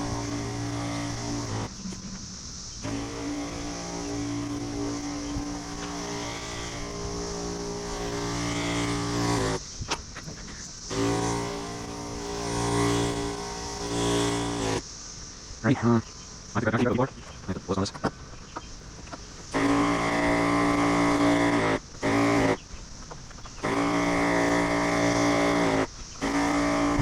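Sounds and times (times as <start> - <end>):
sprayer pump motor humming: 0.0 - 1.7, 2.8 - 9.6, 10.9 - 14.8, 19.5 - 22.6, 23.6 - 27.0.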